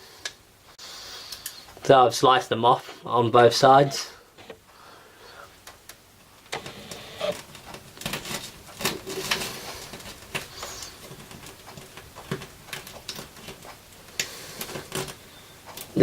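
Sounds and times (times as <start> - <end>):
clicks and taps handling plastic parts: 5.6 - 15.9.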